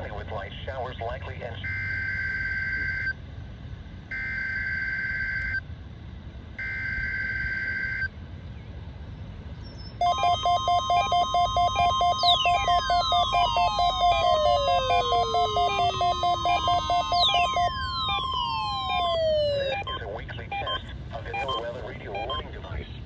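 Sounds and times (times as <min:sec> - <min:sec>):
electronic warning alarm: 0:10.0 - 0:22.6
two-tone data bursts: 0:10.0 - 0:22.6.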